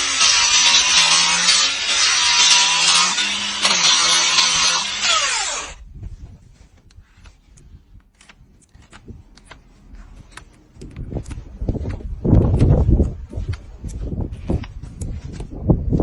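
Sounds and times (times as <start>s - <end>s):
power tool motor spinning down: 0.0s - 5.8s.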